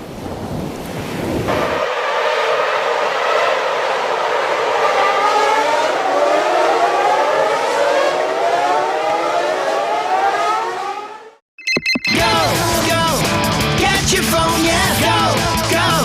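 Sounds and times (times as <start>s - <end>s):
wavering siren ringtone: 9.9s - 12.5s.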